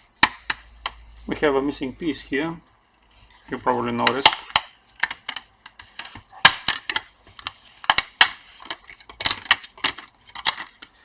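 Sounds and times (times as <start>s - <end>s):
plastic parts snapping and clicking: 4.1s - 10.9s.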